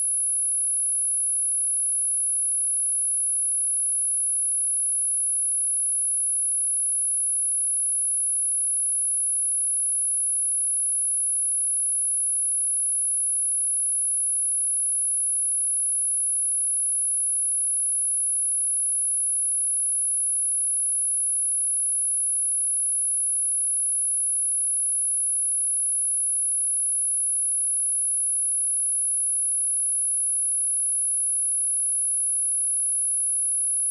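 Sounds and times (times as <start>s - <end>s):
high-pitched sine test tone: 32.1s - 33.9s.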